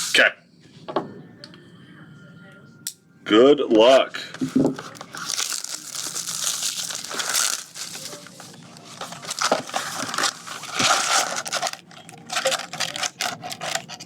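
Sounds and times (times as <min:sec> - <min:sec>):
plastic wrapping crinkling and tearing: 0:04.4 - 0:14.0.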